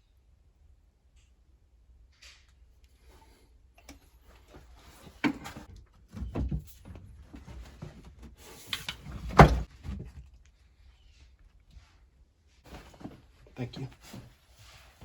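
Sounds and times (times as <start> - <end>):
pipe fittings knocking and clunking: 5.2 - 10.3.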